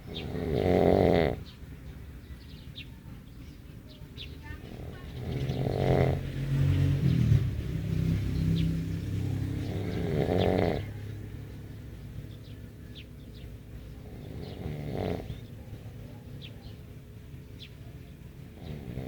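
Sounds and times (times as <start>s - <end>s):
person snoring: 0.1s - 1.4s, 9.6s - 10.9s.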